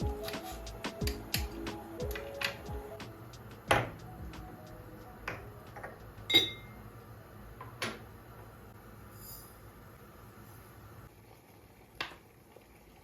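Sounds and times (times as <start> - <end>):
glassy clink: 6.3 - 6.8.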